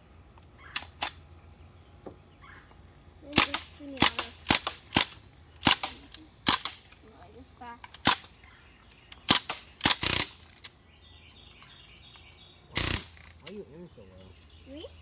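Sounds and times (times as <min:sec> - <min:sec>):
bb gun pops: 0:03.3 - 0:06.9.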